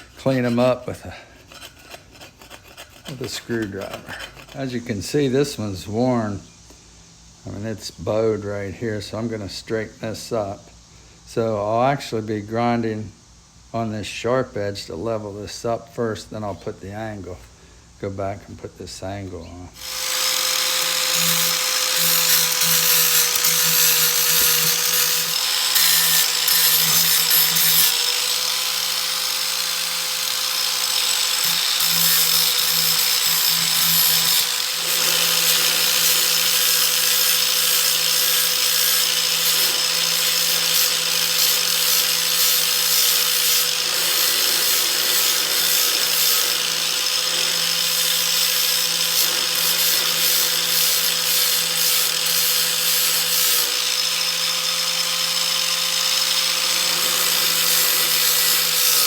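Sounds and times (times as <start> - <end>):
electric grinder grinding steel: 0.0 - 5.2, 19.8 - 59.0.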